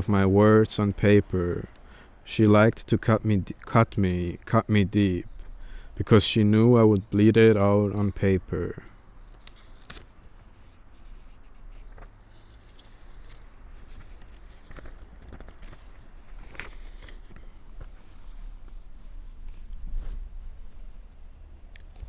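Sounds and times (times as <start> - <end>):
soft handling rustles: 7.8 - 22.0.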